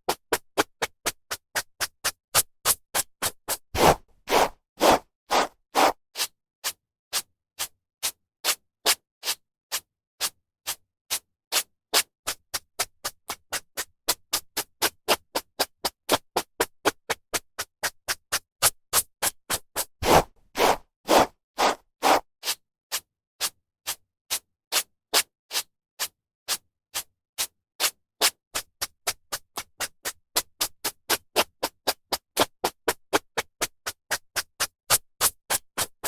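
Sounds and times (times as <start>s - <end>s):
hairbrush stroking through hair: 3.8s - 5.9s, 20.0s - 22.2s.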